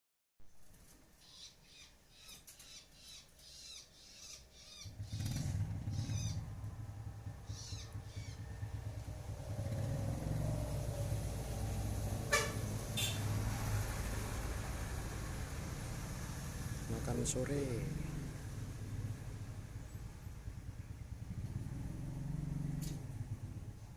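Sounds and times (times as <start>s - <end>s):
songbird chirping: 0.5s - 8.9s
vehicle engine rumble: 4.6s - 23.9s.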